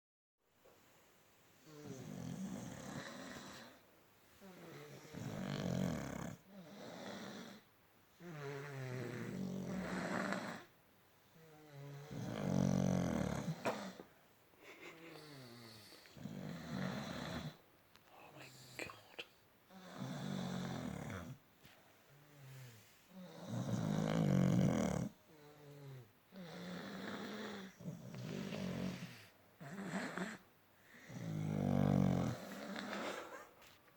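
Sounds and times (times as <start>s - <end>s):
people snoring: 1.6s - 3.8s, 4.4s - 10.7s, 11.4s - 14.0s, 15.0s - 17.6s, 19.7s - 21.4s, 22.4s - 33.4s.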